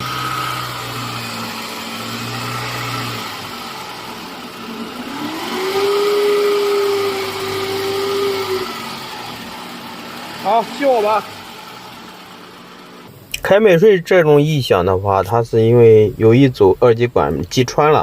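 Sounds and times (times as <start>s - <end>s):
engine running: 0.0s - 13.4s
alternator whining: 0.0s - 18.0s.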